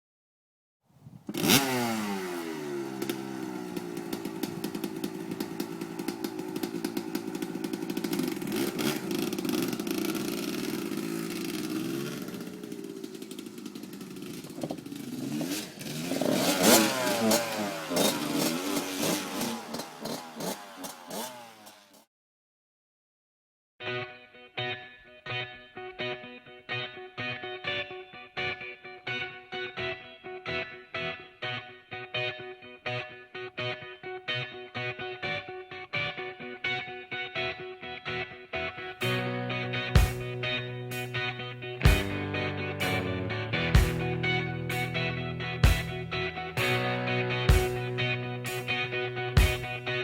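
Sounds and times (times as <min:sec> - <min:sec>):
motorcycle engine revving: 0:01.3 - 0:22.0, 0:39.0 - 0:50.0.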